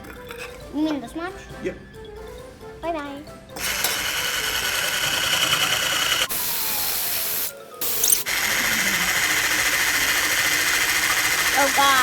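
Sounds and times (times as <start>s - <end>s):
electric mixer whirring: 3.6s - 12.0s.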